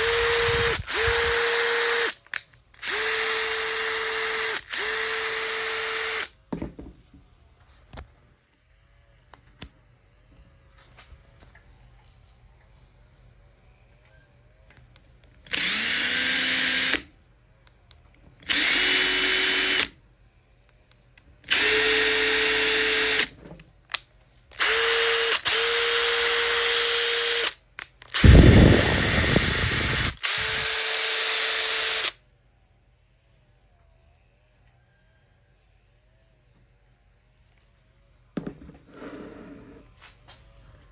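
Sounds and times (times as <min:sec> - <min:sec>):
impact driver motor whining: 0:00.0 - 0:02.2, 0:02.8 - 0:06.3, 0:15.5 - 0:17.0, 0:18.4 - 0:19.9, 0:21.5 - 0:23.3, 0:24.6 - 0:27.5, 0:28.1 - 0:32.1.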